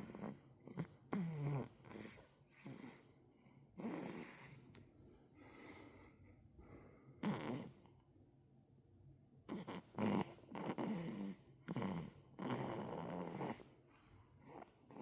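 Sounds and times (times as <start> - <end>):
rough buzzing snoring: 7.2 - 7.8, 9.5 - 13.6.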